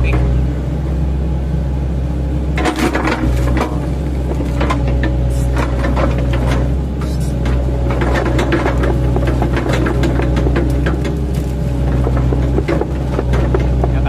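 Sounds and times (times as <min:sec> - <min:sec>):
excavator diesel engine running: 0:00.0 - 0:14.0
sharp knocks and cracks: 0:02.6 - 0:06.8, 0:07.4 - 0:14.0.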